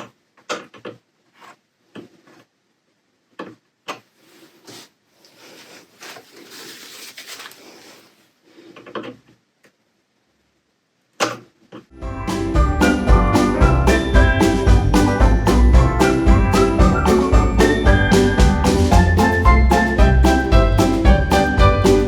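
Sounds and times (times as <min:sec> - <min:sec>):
rubbing or scraping: 0:04.1 - 0:09.1.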